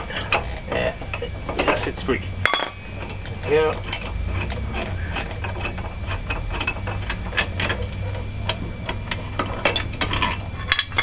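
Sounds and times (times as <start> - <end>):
steady low hum: 0.0 - 11.0
metal tools clicking and tapping: 2.5 - 7.8.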